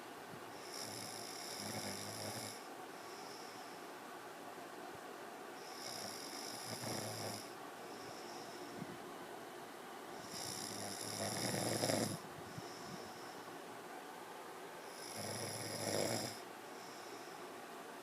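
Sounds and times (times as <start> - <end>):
man snoring: 0.6 - 2.7, 5.6 - 7.5, 10.2 - 12.2, 14.9 - 16.4
soft breath out: 7.8 - 9.0, 12.1 - 13.6, 16.7 - 17.6.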